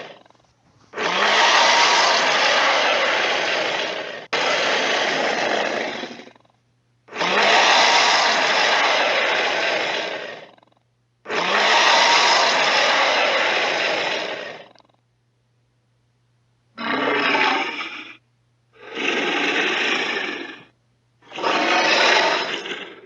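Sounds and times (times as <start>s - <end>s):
dinosaur roars: 1.0s - 6.4s, 7.1s - 10.7s, 11.3s - 14.8s, 16.8s - 18.2s, 18.8s - 23.0s.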